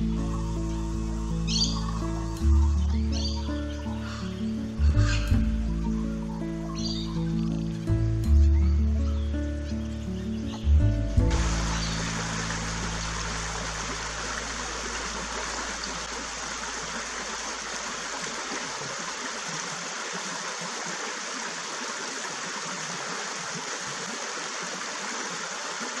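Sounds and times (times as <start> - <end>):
background music: 0.0 - 16.8.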